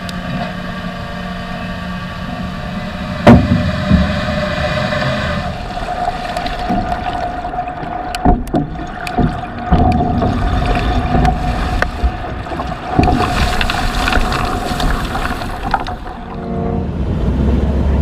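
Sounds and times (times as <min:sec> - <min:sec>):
boat running on water: 0:00.0 - 0:18.0
steady high whine: 0:00.0 - 0:18.0
sharp knocks: 0:03.2 - 0:04.3.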